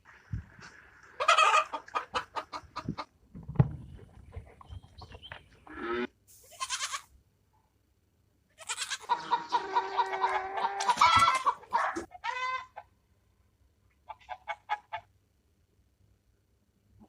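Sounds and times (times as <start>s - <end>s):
farm animal calls: 3.9s - 7.1s, 8.6s - 12.9s.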